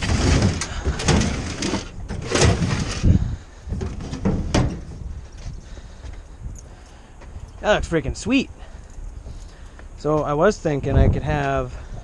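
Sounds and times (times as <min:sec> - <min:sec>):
toolbox scraping and clunking: 0:00.0 - 0:05.5.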